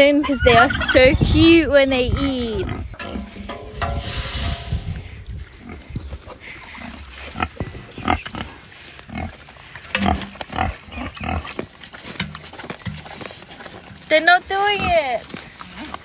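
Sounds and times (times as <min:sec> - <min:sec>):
pigs calling: 0:00.0 - 0:03.2, 0:05.6 - 0:11.7, 0:14.4 - 0:16.0.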